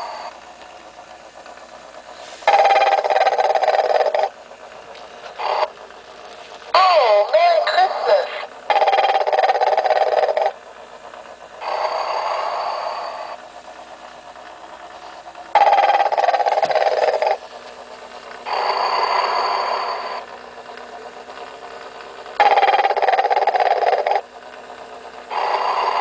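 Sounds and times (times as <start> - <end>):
rasping snore: 25.3 - 26.0.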